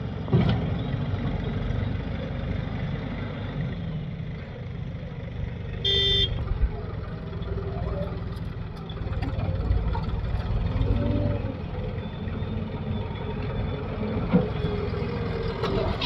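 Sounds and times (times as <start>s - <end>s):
diesel engine running: 0.0s - 16.0s
short horn toot: 5.8s - 6.4s.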